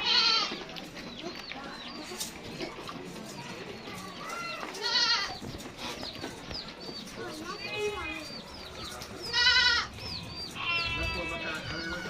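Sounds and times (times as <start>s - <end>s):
goats bleating: 0.0s - 0.6s, 4.5s - 5.4s, 9.3s - 10.0s, 10.6s - 12.0s.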